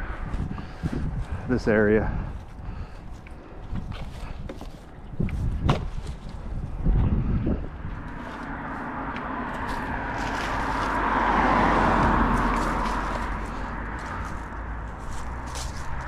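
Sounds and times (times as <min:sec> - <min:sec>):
car passing: 0:06.3 - 0:16.0.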